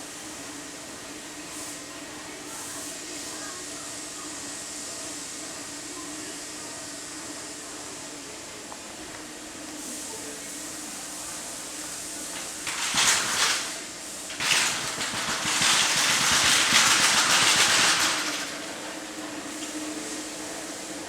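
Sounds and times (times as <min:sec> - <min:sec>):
hissing spray: 0:11.0 - 0:20.8.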